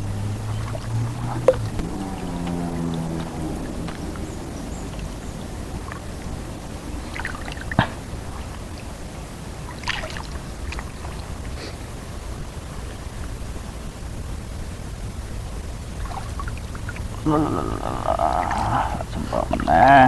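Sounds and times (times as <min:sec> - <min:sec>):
water flowing steadily: 0:00.0 - 0:20.0
short sharp splashes: 0:00.1 - 0:08.8, 0:09.6 - 0:11.6, 0:15.8 - 0:17.3.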